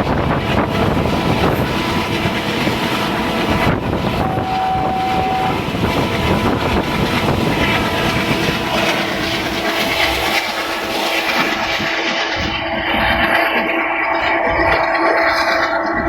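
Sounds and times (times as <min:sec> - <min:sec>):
locomotive engine chugging: 0:00.0 - 0:16.0
steady whine: 0:00.0 - 0:16.0.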